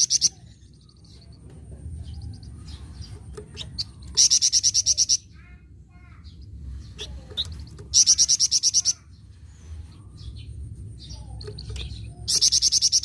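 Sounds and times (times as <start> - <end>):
soft bird chirps: 0.0 - 13.0
bird chattering call: 6.9 - 9.1.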